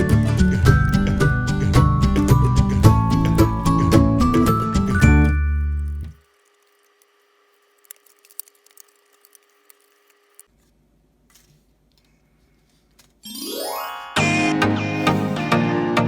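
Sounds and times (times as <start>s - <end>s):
background music: 0.0s - 6.1s, 13.3s - 16.0s.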